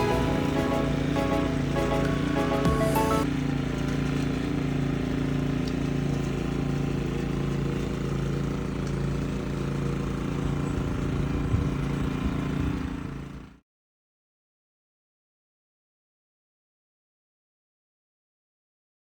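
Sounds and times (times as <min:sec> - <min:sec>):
engine running steadily: 0:00.0 - 0:13.6.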